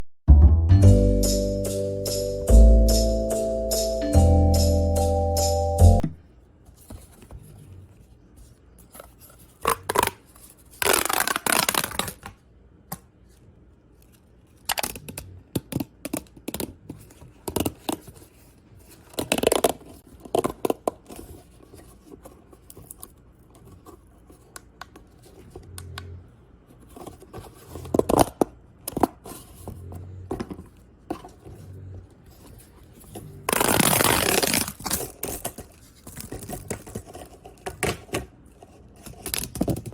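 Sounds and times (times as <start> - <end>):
plastic pop tubes crackling: 10.8 - 12.3
rasping tube stretches: 33.2 - 34.9.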